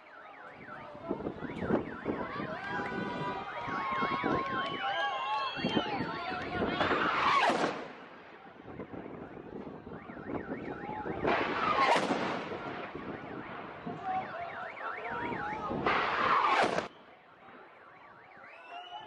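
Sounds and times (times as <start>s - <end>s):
rockets launching: 6.4s - 8.2s, 10.2s - 14.1s, 15.2s - 17.0s.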